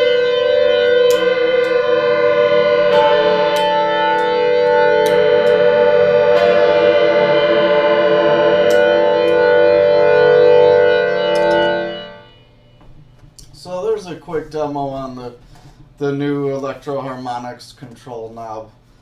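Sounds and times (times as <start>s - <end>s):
electric guitar chord drone: 0.0s - 13.0s.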